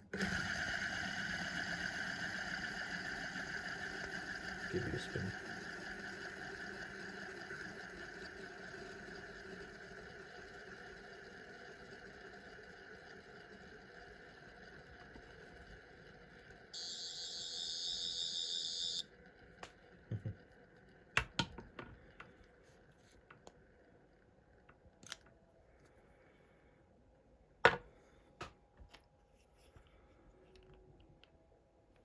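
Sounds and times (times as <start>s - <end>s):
high electronic warbling buzz: 16.8s - 19.0s.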